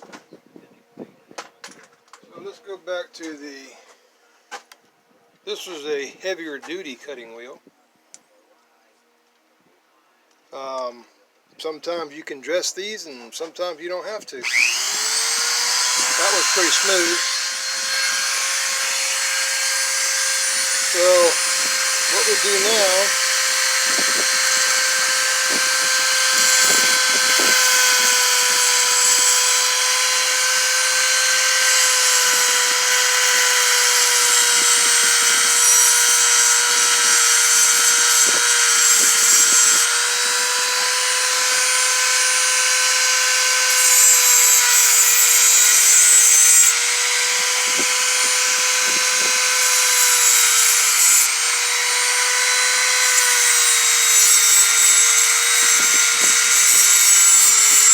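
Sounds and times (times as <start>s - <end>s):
grinding wheel grinding metal: 14.4s - 57.9s.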